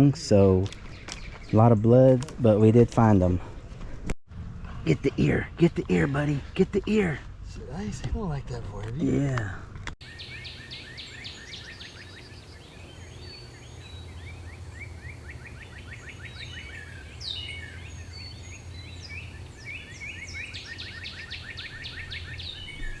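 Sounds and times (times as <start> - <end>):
birds chirping: 0.3 - 3.8, 4.6 - 8.4, 10.0 - 23.0
steady low hum: 4.3 - 23.0.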